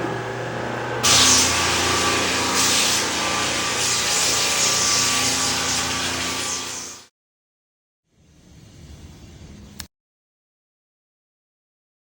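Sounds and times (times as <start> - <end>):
floor sanding machine hiss: 1.0 - 7.1.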